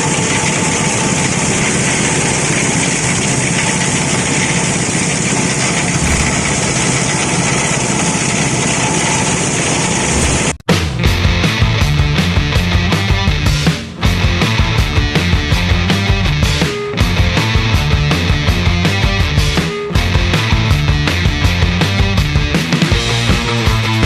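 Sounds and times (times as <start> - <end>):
shredder machine running: 0.0 - 10.6.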